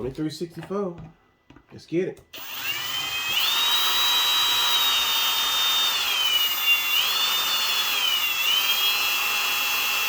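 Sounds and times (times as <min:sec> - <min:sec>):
electric drill drilling: 0:02.4 - 0:10.0.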